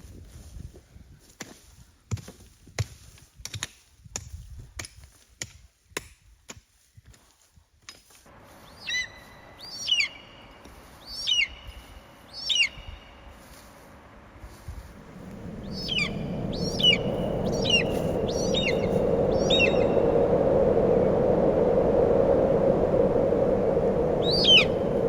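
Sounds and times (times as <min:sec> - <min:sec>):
wind noise: 0:00.0 - 0:01.3, 0:03.3 - 0:05.0, 0:14.4 - 0:25.0
bird calling: 0:08.7 - 0:13.2, 0:15.0 - 0:20.2, 0:24.1 - 0:25.0.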